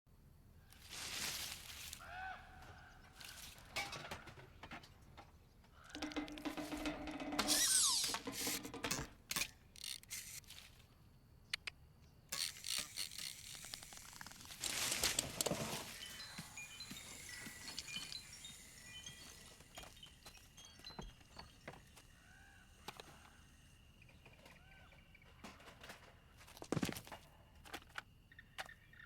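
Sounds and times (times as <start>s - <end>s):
rattling: 3.6s - 10.4s, 12.3s - 22.0s
clicks and knocks: 3.8s - 10.1s
falling glide effect: 7.4s - 8.6s.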